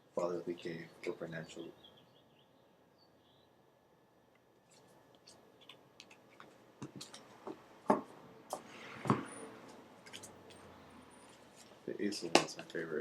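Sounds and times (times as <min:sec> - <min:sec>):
cards clicking and tapping: 0:05.2 - 0:08.6.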